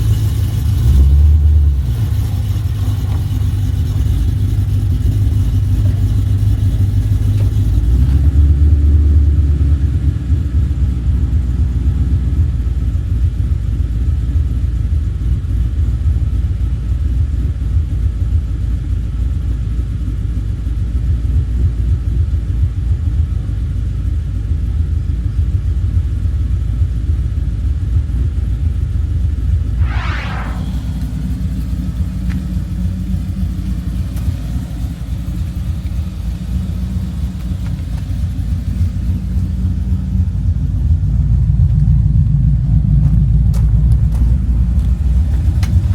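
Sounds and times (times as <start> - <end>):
car engine rumbling: 0.0 - 45.9
sliding higher tone: 29.8 - 32.3.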